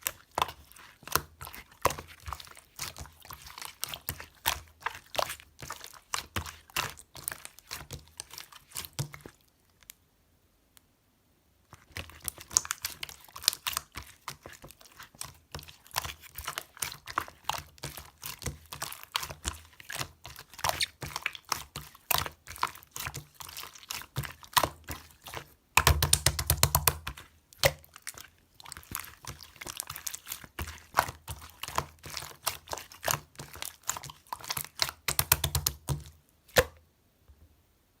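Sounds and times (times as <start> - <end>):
slime squished by hand: 11.8 - 36.8.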